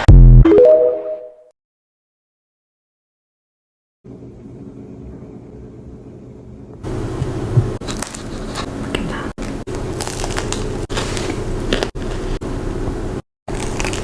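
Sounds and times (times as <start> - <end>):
steady low hum: 4.1 - 13.2
donut bitten and chewed: 9.7 - 12.3, 13.5 - 14.0.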